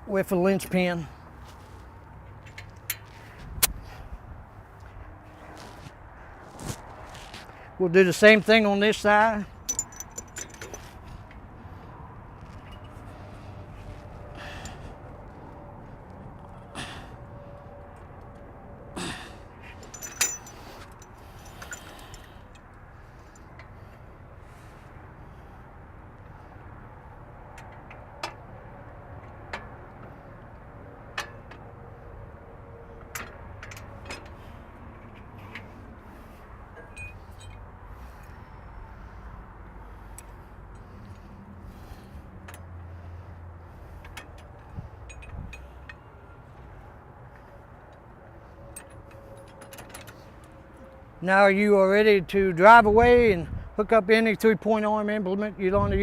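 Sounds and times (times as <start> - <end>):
metal pin clinking: 9.6 - 10.9, 19.7 - 22.7.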